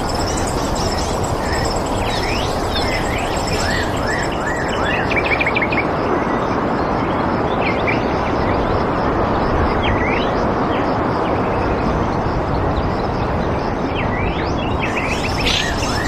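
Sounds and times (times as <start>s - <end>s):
songbirds chirping: 0.0s - 5.7s, 14.0s - 16.0s
steady rushing noise: 14.8s - 16.0s.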